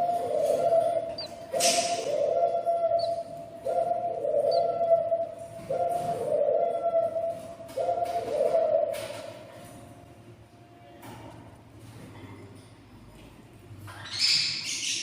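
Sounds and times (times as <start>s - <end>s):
budgerigar chicks calling: 0.0s - 5.3s.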